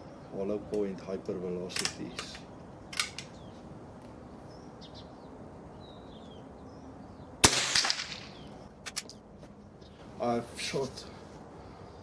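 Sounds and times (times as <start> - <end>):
birds chirping faintly: 0.0 - 7.4, 8.1 - 12.0
rifle shot with echo: 7.4 - 8.4.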